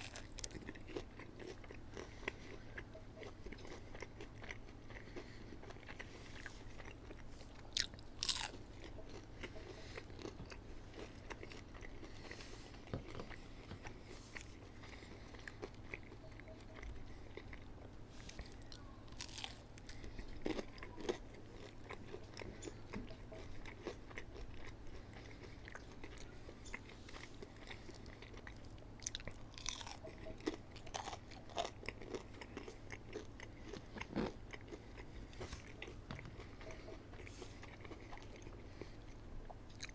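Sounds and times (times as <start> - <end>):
faint low hum: 0.0 - 39.9
wet chewing: 0.0 - 39.9
crunchy bites: 3.5 - 12.4, 18.4 - 22.0, 23.7 - 36.9.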